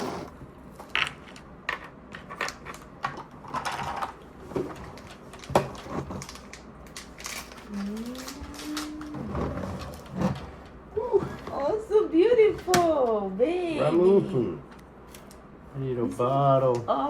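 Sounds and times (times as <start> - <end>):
packaging crinkling: 4.8 - 10.2.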